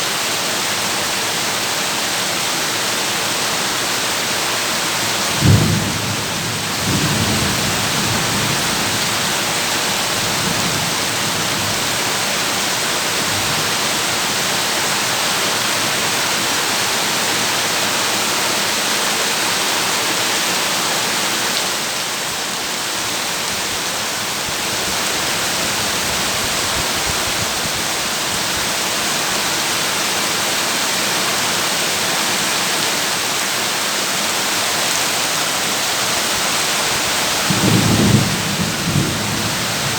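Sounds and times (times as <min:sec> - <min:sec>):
heavy rain on a tin roof: 0:00.0 - 0:39.9
thunder rumble: 0:37.4 - 0:39.9.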